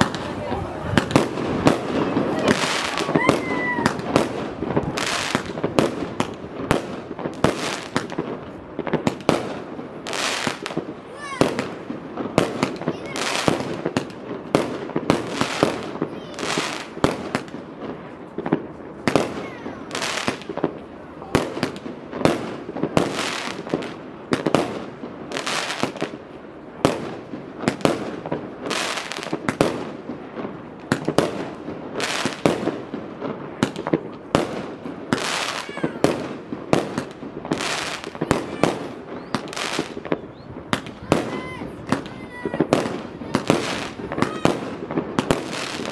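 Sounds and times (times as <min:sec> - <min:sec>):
firework bursts and crackling: 0:00.0 - 0:45.9.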